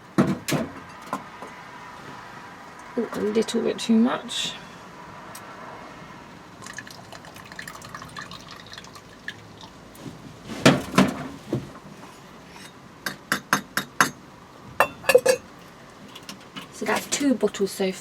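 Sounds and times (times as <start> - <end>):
liquid trickling through funnel: 6.6 - 9.8
glass bottles clinking: 14.8 - 15.5.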